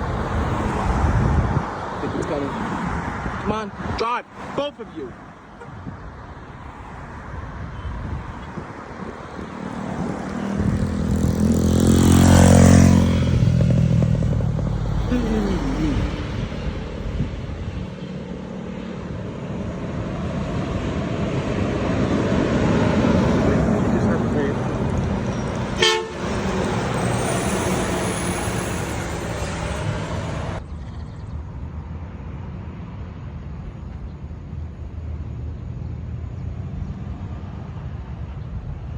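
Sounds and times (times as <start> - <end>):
road traffic passing: 0.0 - 38.9
heavy truck driving past: 9.0 - 30.6.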